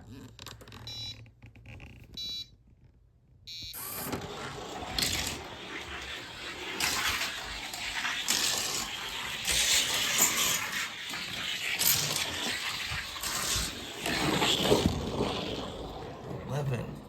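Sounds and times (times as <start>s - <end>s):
toy car wheels rattling on track: 4.0s - 16.2s.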